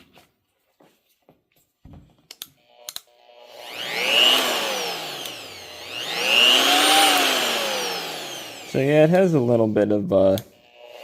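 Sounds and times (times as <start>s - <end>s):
cut-off tool motor whining: 2.4s - 11.0s
cut-off tool switch clicks: 5.2s - 5.4s.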